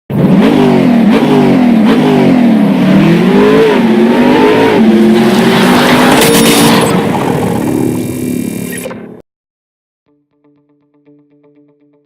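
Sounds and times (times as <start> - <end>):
car engine revving: 0.1 - 8.8.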